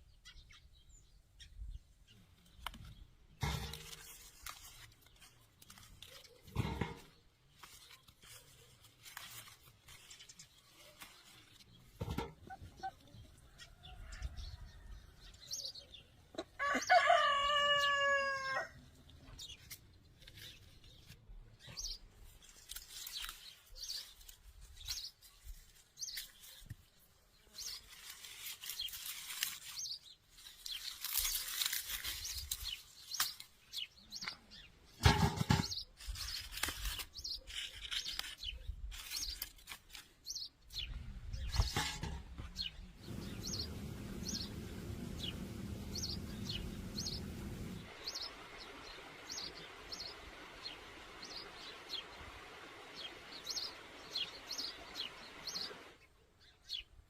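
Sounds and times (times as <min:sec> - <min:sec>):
rooster crowing: 0:16.6 - 0:18.8.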